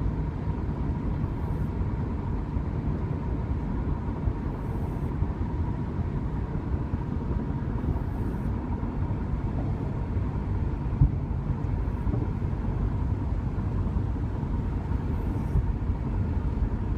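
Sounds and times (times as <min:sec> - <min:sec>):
car road and engine noise: 0:00.0 - 0:16.9
faint steady whine: 0:00.0 - 0:16.9.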